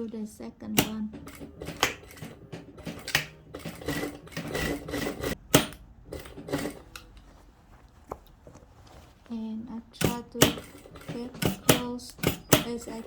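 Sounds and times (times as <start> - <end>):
sewing machine stitching: 0.0 - 7.3, 9.8 - 13.0
sharp clicks: 0.6 - 3.7, 10.0 - 13.0.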